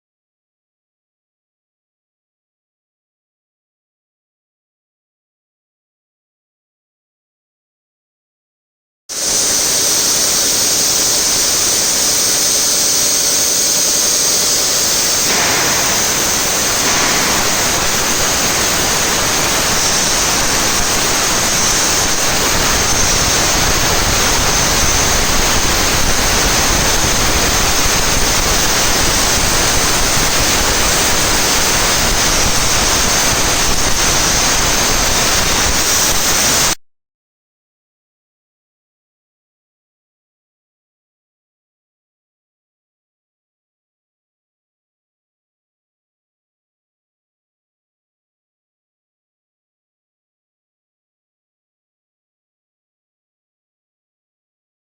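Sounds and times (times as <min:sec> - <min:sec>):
torch hissing: 0:09.1 - 0:36.8.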